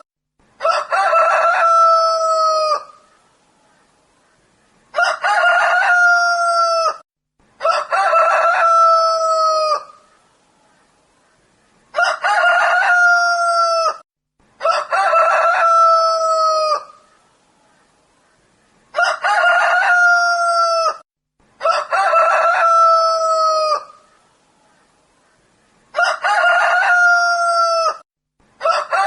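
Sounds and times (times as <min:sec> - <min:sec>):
rooster crowing: 0:00.6 - 0:03.0, 0:04.9 - 0:07.0, 0:07.6 - 0:10.0, 0:11.9 - 0:14.0, 0:14.6 - 0:17.0, 0:18.9 - 0:21.0, 0:21.6 - 0:24.0, 0:25.9 - 0:28.0, 0:28.6 - 0:29.0.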